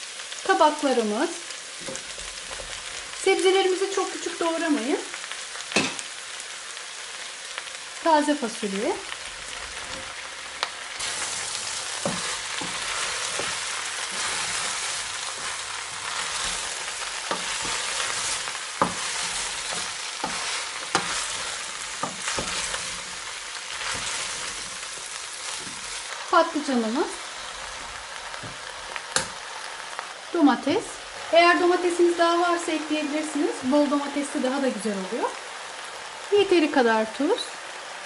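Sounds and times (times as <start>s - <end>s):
food sizzling in a pot: 0.0s - 38.0s
spoon stirring and knocking pot: 15.4s - 23.0s.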